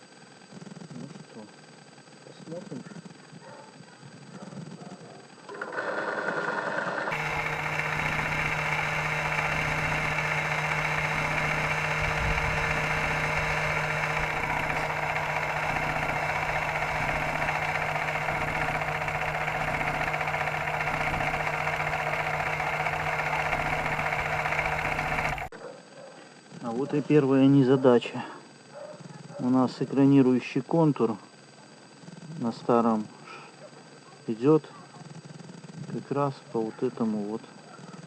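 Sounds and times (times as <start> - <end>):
electric mini drill running: 5.2 - 25.5.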